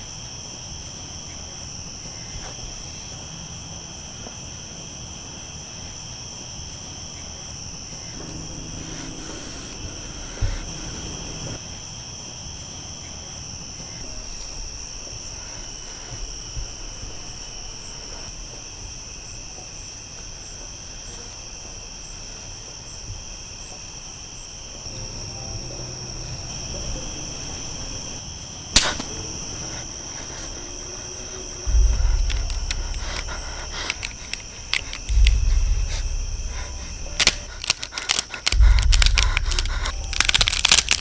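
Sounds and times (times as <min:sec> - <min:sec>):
crickets chirping: 0:00.0 - 0:41.0
low thump: 0:31.6 - 0:37.6, 0:38.5 - 0:41.0.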